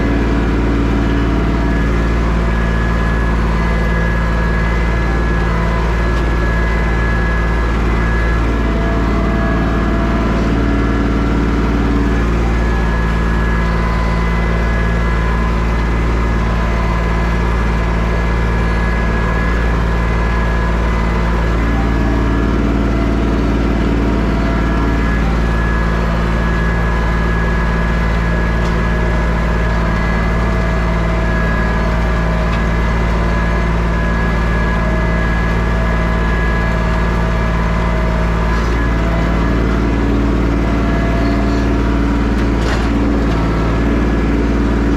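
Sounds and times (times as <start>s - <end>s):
tractor engine running under load: 0.0s - 44.9s.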